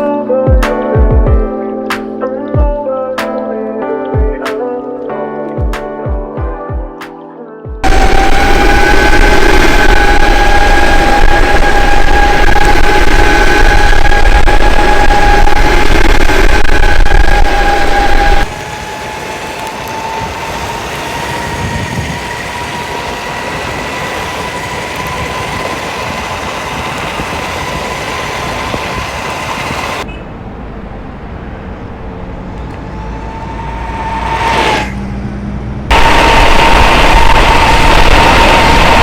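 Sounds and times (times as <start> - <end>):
electric motor whine: 7.8 - 30.1, 32.4 - 39.0
wheels rumbling on pavement: 7.8 - 39.0.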